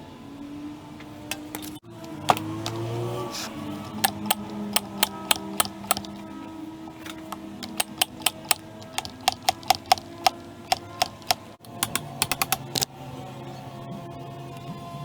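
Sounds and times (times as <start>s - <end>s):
sharp clicks and taps: 1.3s - 2.9s, 3.8s - 6.2s, 6.9s - 12.9s.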